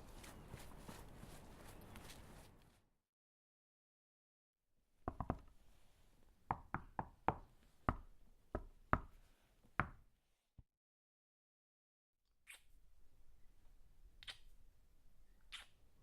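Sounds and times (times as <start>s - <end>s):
sharp knocks on hard surface: 5.1s - 5.4s.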